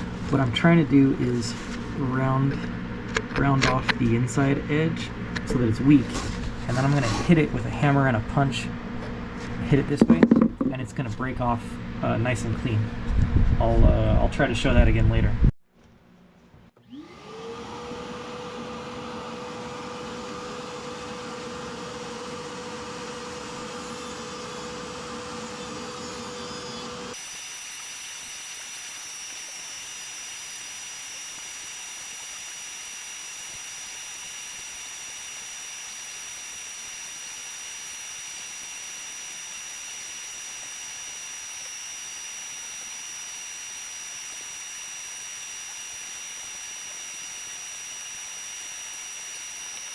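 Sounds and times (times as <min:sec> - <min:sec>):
electric motor running: 0:27.2 - 0:49.9
steady hiss with high whine: 0:27.2 - 0:49.9.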